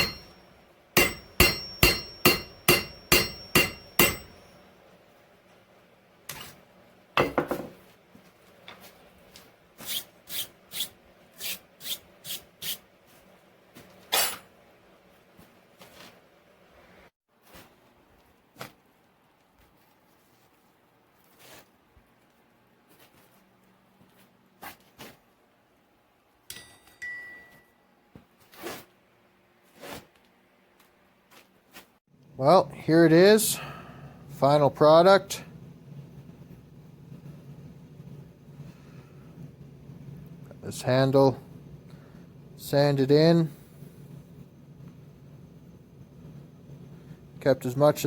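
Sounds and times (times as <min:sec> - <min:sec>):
soft handling rustles: 0:15.0 - 0:16.3, 0:17.3 - 0:25.4.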